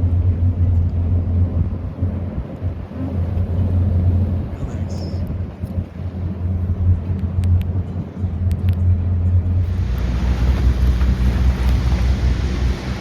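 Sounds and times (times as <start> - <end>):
boat motor running: 0.0 - 13.0
rushing noise: 9.5 - 13.0.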